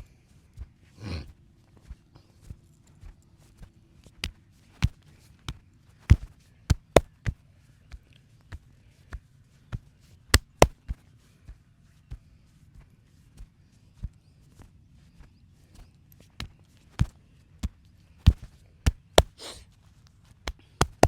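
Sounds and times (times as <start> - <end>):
hand slaps on body: 4.2 - 7.1, 10.4 - 10.9, 18.3 - 19.6, 20.5 - 21.0.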